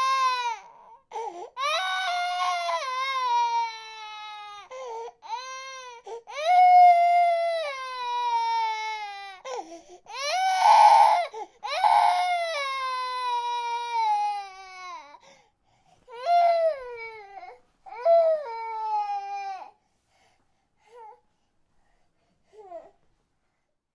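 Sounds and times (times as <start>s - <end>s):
infant crying: 0.0s - 15.2s, 16.1s - 19.8s.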